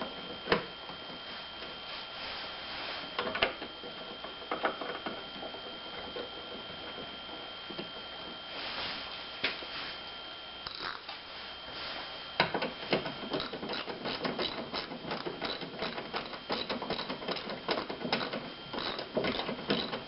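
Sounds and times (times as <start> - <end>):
high-pitched hum: 10.2 - 11.3
hand tools clicking and tapping metal: 12.9 - 20.0.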